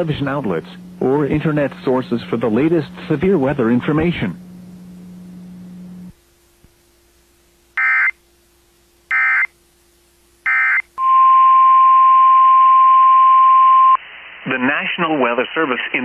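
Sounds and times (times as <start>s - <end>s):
low hum: 0.0s - 7.6s
steady alarm tone: 9.1s - 9.5s, 10.4s - 11.1s.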